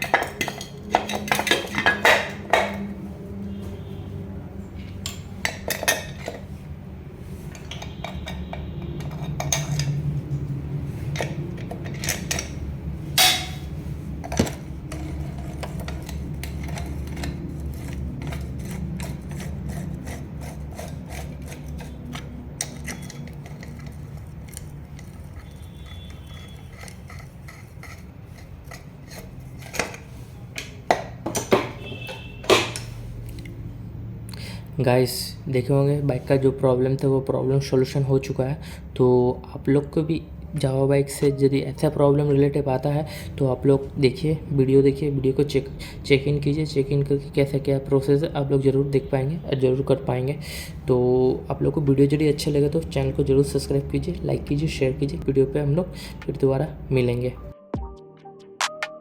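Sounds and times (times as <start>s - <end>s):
metal tools clinking and scraping: 0.0s - 3.0s, 4.8s - 6.6s, 7.4s - 10.4s, 11.0s - 33.0s.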